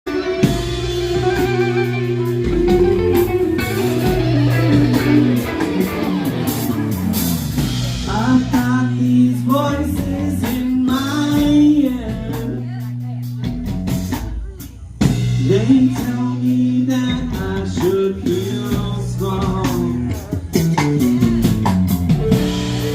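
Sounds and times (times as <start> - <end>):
guitar: 0.0 - 22.9
steady bass line: 0.1 - 22.9
person singing: 7.9 - 13.1, 15.3 - 21.6.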